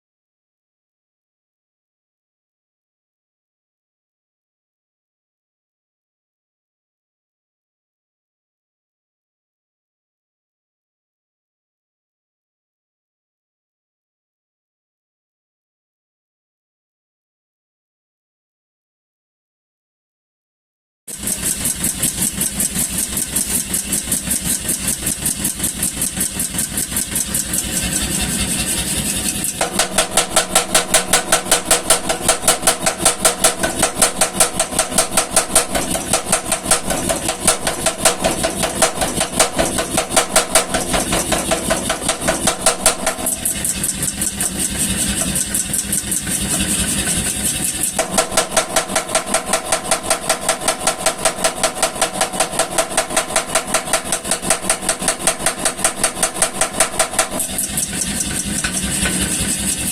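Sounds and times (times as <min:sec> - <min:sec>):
power hammer striking: 0:26.4 - 0:59.9.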